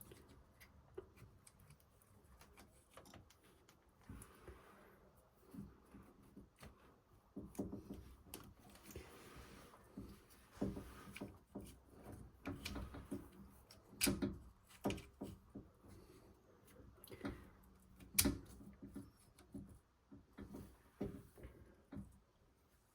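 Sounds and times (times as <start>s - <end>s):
light clicks of small parts: 0.0s - 4.6s, 11.0s - 15.2s, 16.7s - 19.7s.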